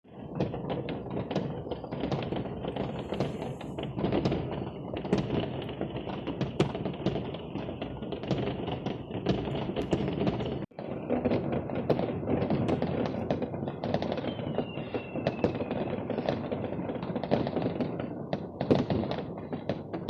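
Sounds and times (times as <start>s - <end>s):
firecrackers crackling: 0.1s - 20.0s
loud fireworks bangs: 0.1s - 20.0s.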